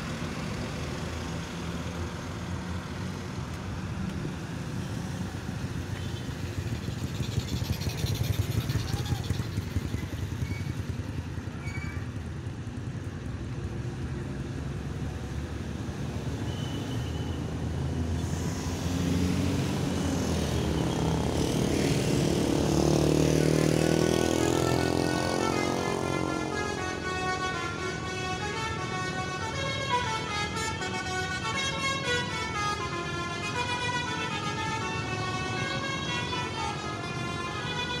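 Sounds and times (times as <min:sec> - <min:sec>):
heavy vehicle approaching: 0:00.0 - 0:12.8
motor vehicles passing: 0:00.0 - 0:38.0.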